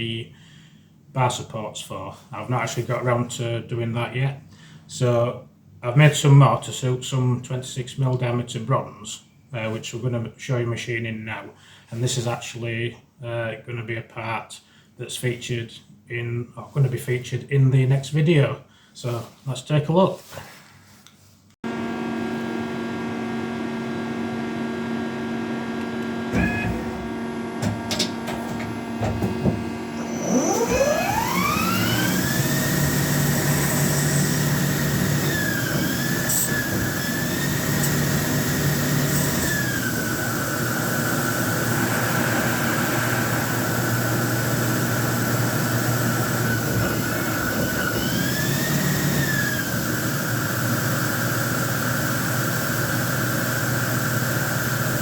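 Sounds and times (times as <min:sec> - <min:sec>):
lathe spindle whine: 0:21.7 - 0:55.0
machine hum: 0:21.7 - 0:55.0.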